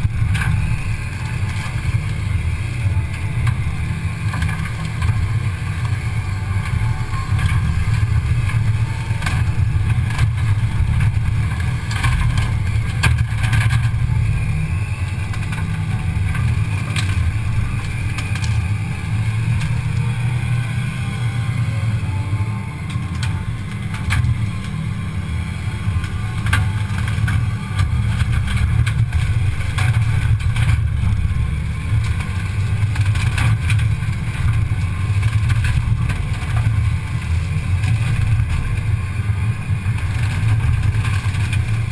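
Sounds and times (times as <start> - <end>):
excavator diesel engine running: 0.0 - 41.9
sharp cracks and snaps: 15.3 - 18.8.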